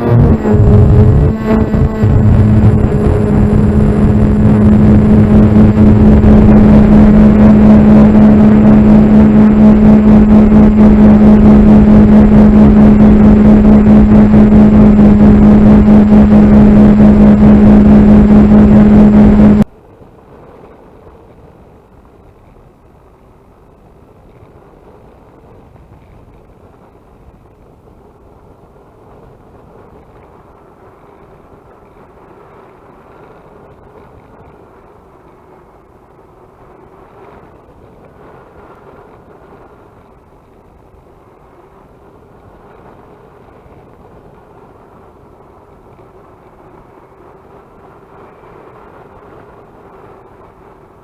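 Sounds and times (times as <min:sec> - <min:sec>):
electric motors and propellers humming: 0:00.0 - 0:19.7
wind rushing: 0:00.0 - 0:19.7.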